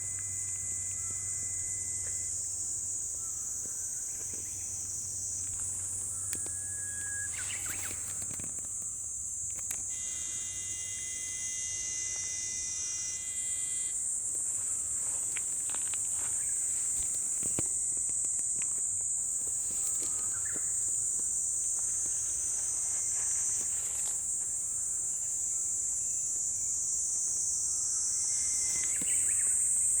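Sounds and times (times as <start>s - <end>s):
insects droning: 0.0s - 30.0s
held tone: 9.9s - 13.9s.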